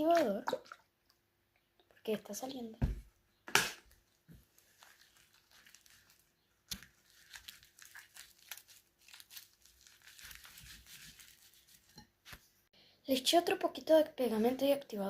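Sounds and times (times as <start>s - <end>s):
slime crackling and tearing: 4.6s - 11.8s.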